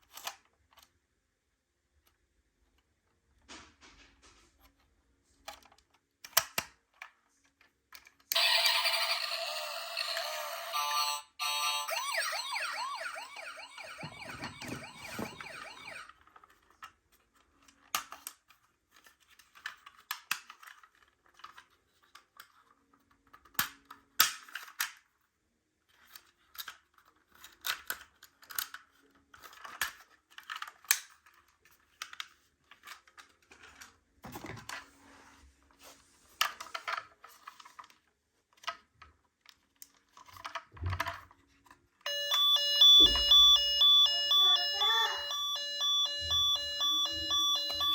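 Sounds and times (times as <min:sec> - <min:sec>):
toy electronic siren wailing: 0:08.3 - 0:16.1, 0:42.1 - 0:47.9
small plastic parts clattering: 0:16.2 - 0:25.0, 0:25.9 - 0:34.8, 0:36.3 - 0:41.8.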